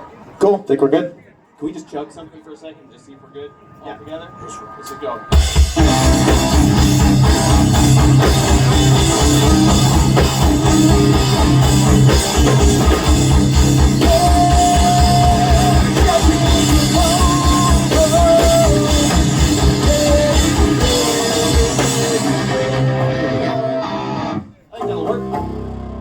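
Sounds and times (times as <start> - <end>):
melodic guitar line with bends: 5.3 - 26.0
rock drums: 5.3 - 26.0
chugging low guitars and bass: 5.4 - 26.0.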